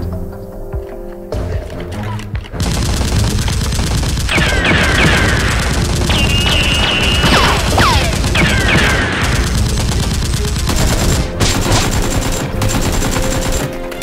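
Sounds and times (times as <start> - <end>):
automatic gunfire: 2.6 - 14.0
falling whistle tones: 6.1 - 7.6.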